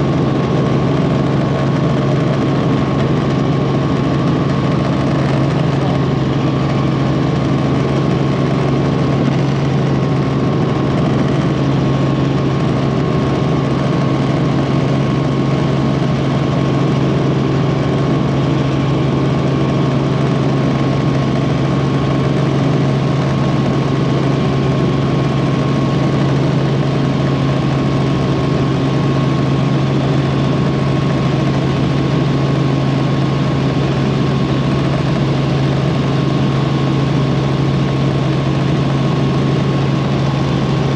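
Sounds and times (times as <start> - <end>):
helicopter rotor and engine drone: 0.0 - 40.9.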